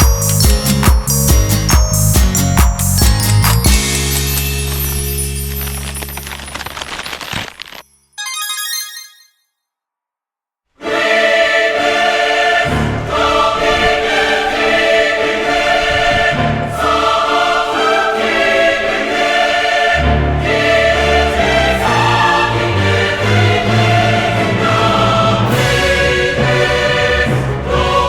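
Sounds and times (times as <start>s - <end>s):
chiming phrase: 8.2s - 9.4s
choral music: 10.8s - 28.0s.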